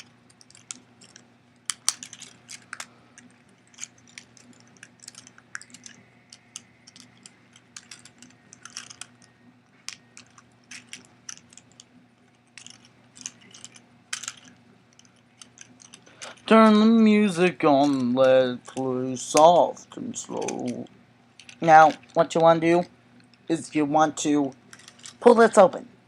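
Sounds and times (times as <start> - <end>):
plastic toy joints clicking: 0.0 - 9.3, 9.9 - 11.9, 12.5 - 16.8.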